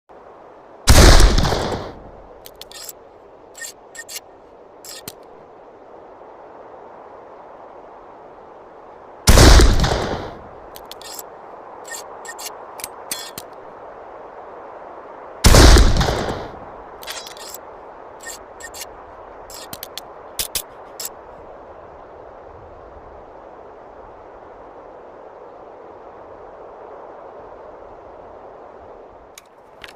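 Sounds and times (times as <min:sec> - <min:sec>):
rifle shots: 0:00.9 - 0:02.0, 0:09.3 - 0:10.4, 0:15.5 - 0:16.5.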